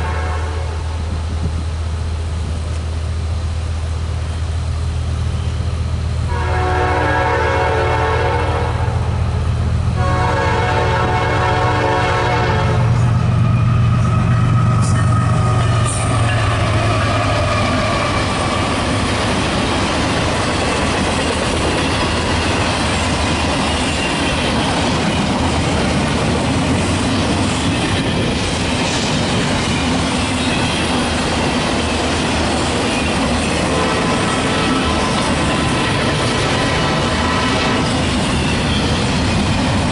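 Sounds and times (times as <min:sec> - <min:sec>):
train horn: 0:00.0 - 0:00.9, 0:06.3 - 0:09.1, 0:10.0 - 0:18.9, 0:33.6 - 0:38.6
locomotive engine rumble: 0:00.0 - 0:39.9
train cars clattering on rails: 0:10.4 - 0:39.9.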